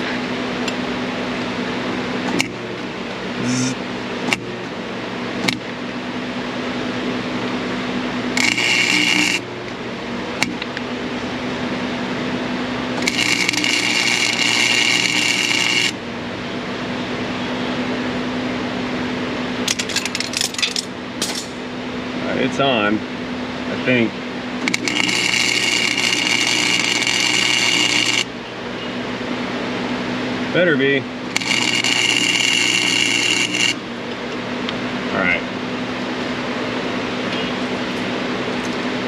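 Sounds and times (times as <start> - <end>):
steady low hum: 0.0 - 39.0
welding arc crackling: 8.4 - 9.5, 12.9 - 16.0, 24.6 - 28.4, 31.3 - 33.8.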